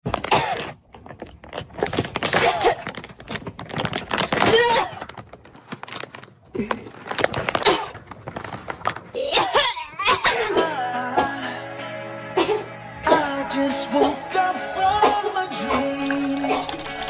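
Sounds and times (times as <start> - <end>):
person's voice: 9.8 - 11.7, 12.4 - 17.0.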